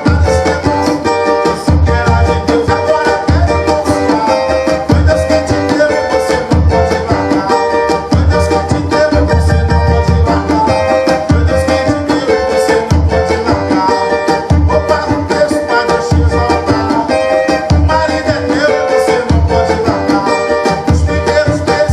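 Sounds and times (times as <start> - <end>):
strummed small guitar: 0.0 - 21.9
low drum thumps: 1.7 - 4.2, 6.5 - 7.4, 8.1 - 12.2, 14.5 - 15.3.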